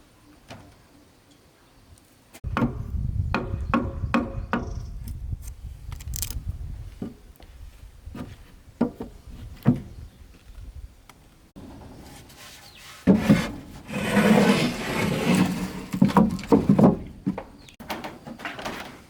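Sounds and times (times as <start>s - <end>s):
wood knocking and rubbing: 12.1s - 17.6s.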